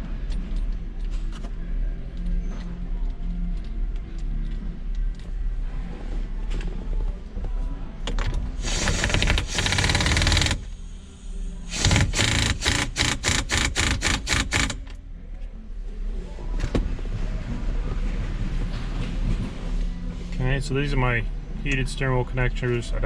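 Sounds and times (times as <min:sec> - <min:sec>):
impact wrench rattling: 0:08.6 - 0:10.8, 0:11.7 - 0:15.0.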